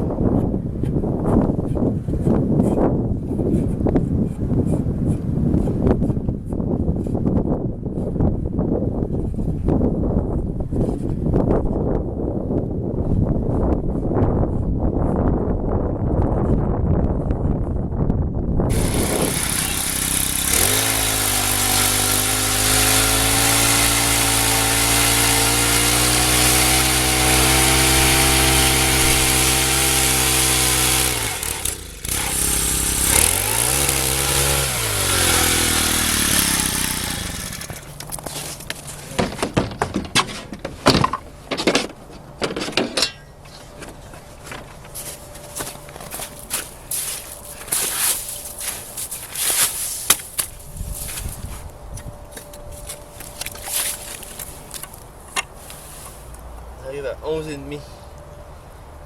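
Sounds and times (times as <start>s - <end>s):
small engine revving: 18.7s - 38.1s
footsteps: 37.2s - 42.7s, 43.4s - 51.7s, 52.3s - 56.4s
knocks: 39.1s - 43.2s.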